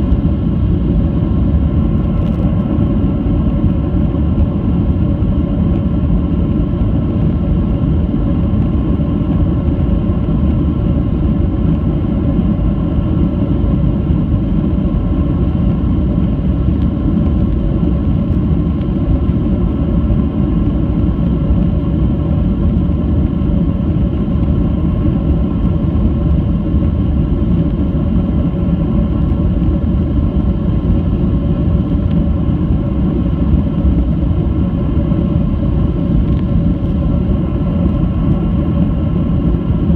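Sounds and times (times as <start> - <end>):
airplane cabin engine rumble: 0.0 - 39.9
steady cabin hum: 0.0 - 39.9.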